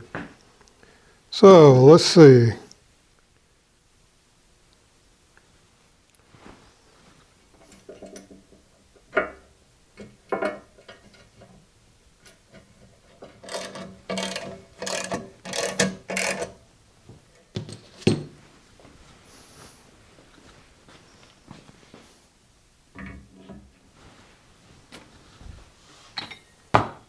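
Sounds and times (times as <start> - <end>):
clicks and knocks of handled parts: 12.2 - 16.6.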